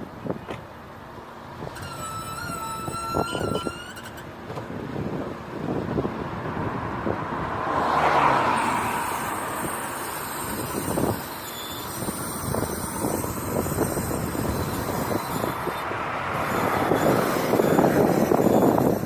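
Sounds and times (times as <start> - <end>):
car road noise: 0.0 - 19.0
wheel creaks and knocks: 1.6 - 4.9.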